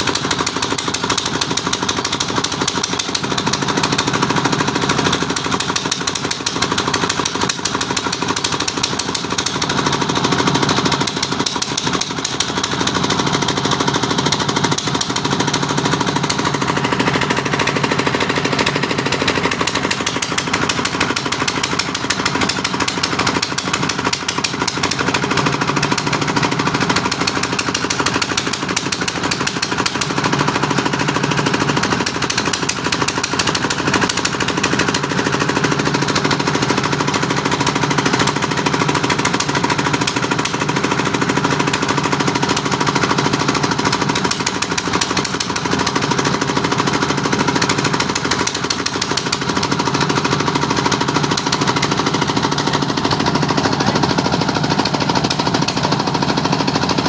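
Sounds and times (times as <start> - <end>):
machine humming: 7.6 - 27.8, 44.8 - 57.0.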